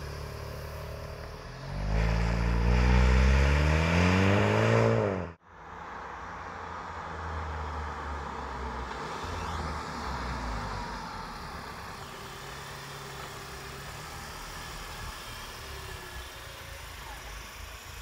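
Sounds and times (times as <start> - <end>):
car engine idling: 0.0 - 1.7, 5.4 - 18.0.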